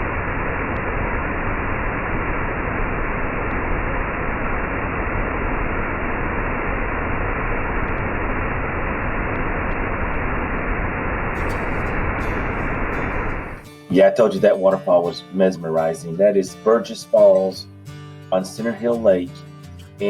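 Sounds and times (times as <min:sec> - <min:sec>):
waterfall rushing: 0:11.4 - 0:13.6.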